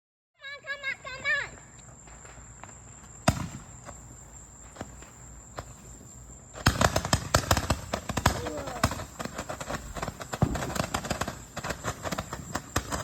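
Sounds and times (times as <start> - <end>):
rapid firework cracks and bangs: 2.0 - 5.8, 6.5 - 13.0
firework bang: 3.2 - 4.0, 6.5 - 13.0.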